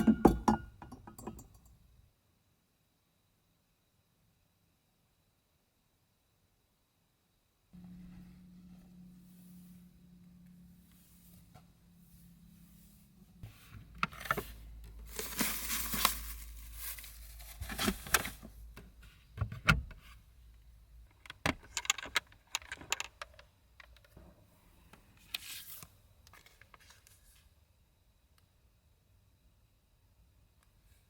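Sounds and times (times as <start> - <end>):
rustling and crinkling: 8.1 - 19.2, 25.2 - 27.5.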